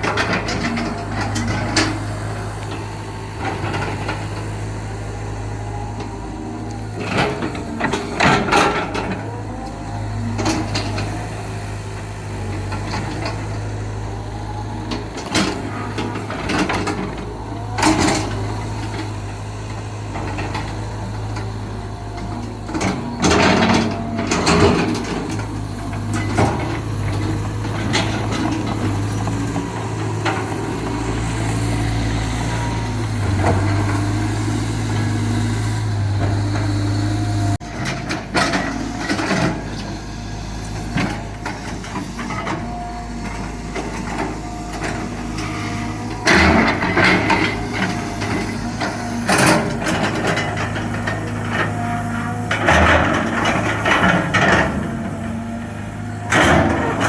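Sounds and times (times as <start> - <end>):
excavator diesel engine running: 0.0 - 57.0.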